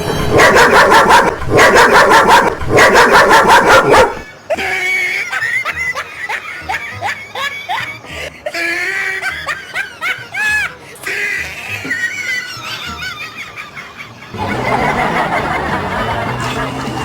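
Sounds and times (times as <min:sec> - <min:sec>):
recorded dog barking: 0:00.0 - 0:04.3.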